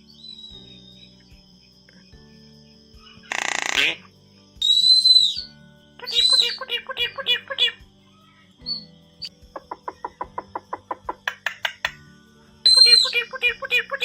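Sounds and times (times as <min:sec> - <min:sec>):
bird whistling: 0:00.0 - 0:01.2, 0:04.6 - 0:07.8, 0:08.6 - 0:09.3, 0:12.7 - 0:14.0
bird rapid clicking notes: 0:09.6 - 0:12.0.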